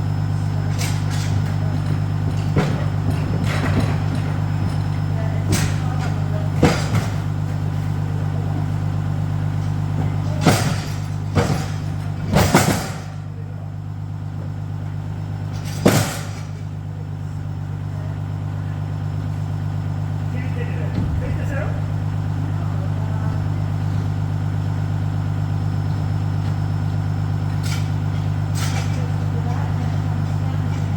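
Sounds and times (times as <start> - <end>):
truck engine droning: 16.4 - 30.9.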